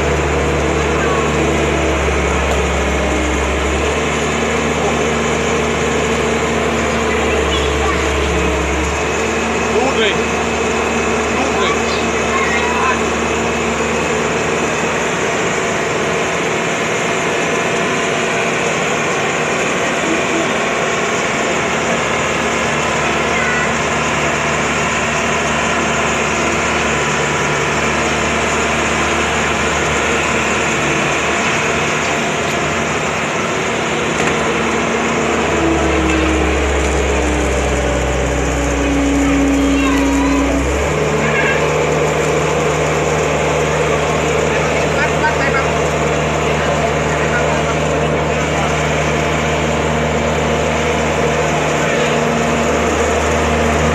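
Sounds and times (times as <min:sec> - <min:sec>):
deep loud hum: 0:00.0 - 0:53.9
excavator diesel engine running: 0:00.0 - 0:53.9
steady tone: 0:33.7 - 0:43.9.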